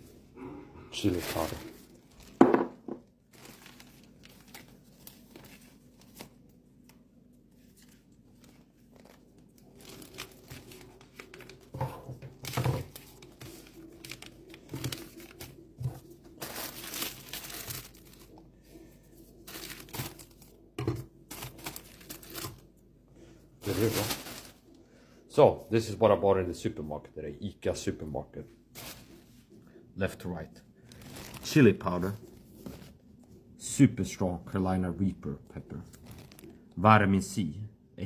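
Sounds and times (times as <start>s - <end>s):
plastic bag crinkling: 1.0s - 22.8s, 23.6s - 24.8s, 28.7s - 29.4s, 30.8s - 33.0s, 35.8s - 36.8s
items knocking on a table: 2.4s - 3.0s.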